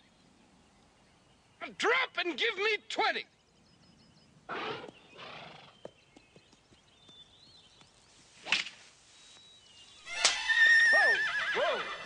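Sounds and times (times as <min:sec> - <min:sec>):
horse whinnying: 0:04.5 - 0:05.8, 0:10.1 - 0:12.0
golf club swish: 0:08.4 - 0:08.9.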